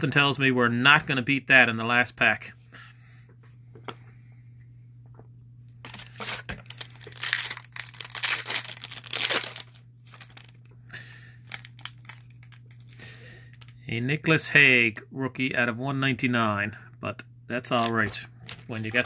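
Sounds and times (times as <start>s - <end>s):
wrapper tearing and crinkling: 5.8s - 10.6s, 11.4s - 13.7s, 17.7s - 19.0s.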